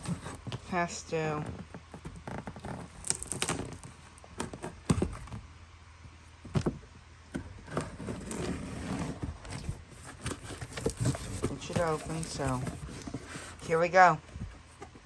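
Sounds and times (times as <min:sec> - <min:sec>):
cardboard scraping and rustling: 0:00.0 - 0:05.5, 0:06.4 - 0:15.0
knocks and thumps on cardboard: 0:06.4 - 0:08.2.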